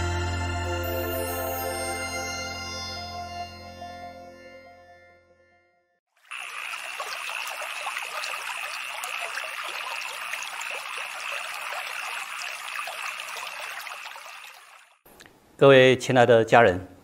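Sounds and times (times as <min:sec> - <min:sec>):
music: 0:00.0 - 0:06.0
trickling running water: 0:06.1 - 0:15.0.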